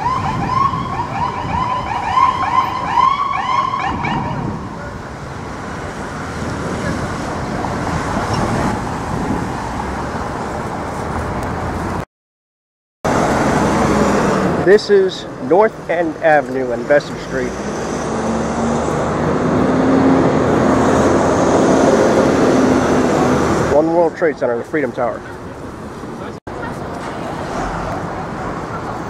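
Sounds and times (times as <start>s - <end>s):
emergency siren yelping: 0.0s - 4.9s
city street traffic: 0.0s - 12.1s, 13.0s - 29.0s.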